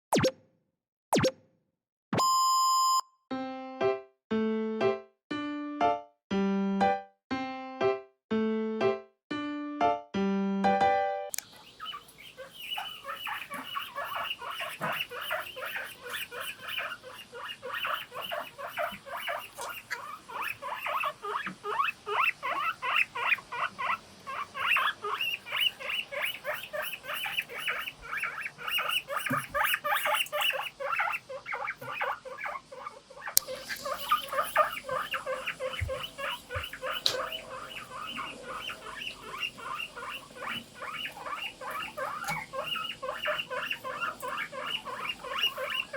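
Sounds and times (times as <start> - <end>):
guinea pigs squeaking: 11.3 - 45.9.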